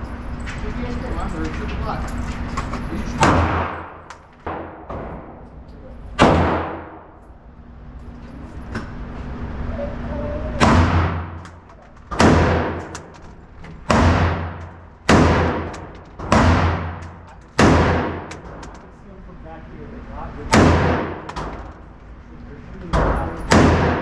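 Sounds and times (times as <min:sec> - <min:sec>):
rifle shots echoing: 0:06.2 - 0:07.2, 0:10.6 - 0:13.1, 0:13.9 - 0:18.6, 0:20.5 - 0:21.6.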